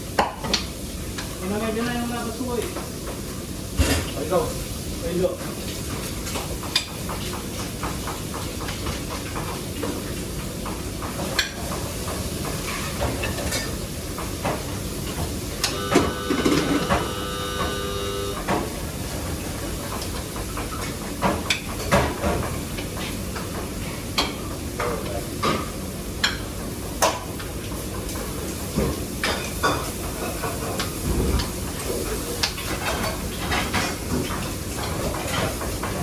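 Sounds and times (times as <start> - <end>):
steady kitchen hiss: 0.0 - 36.0
pans and utensils clattering: 2.6 - 4.4, 5.4 - 17.8, 18.4 - 36.0
mechanical whirring: 15.6 - 18.4.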